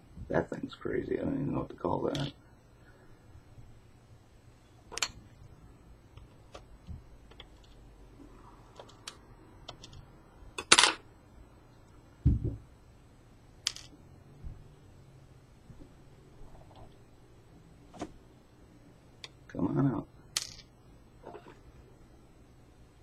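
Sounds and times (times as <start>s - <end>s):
dull thump: 12.2s - 12.6s.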